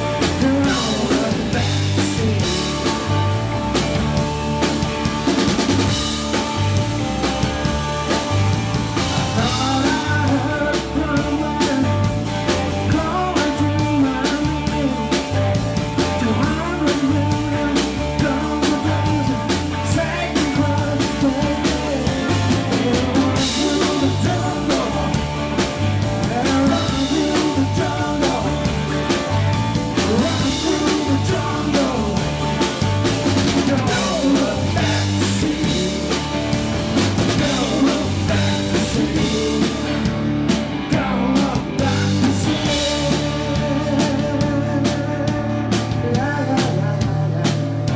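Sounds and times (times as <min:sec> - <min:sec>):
person singing: 0:00.0 - 0:03.2, 0:09.0 - 0:25.6, 0:26.2 - 0:29.1, 0:29.9 - 0:32.7, 0:33.5 - 0:36.3, 0:37.3 - 0:40.1, 0:40.8 - 0:47.9
drum beat: 0:00.0 - 0:45.1.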